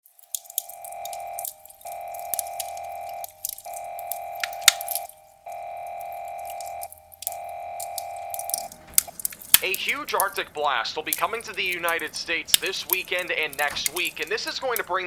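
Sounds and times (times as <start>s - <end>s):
sharp ticks: 0.0s - 15.0s
electronic alert beeps: 0.1s - 10.2s.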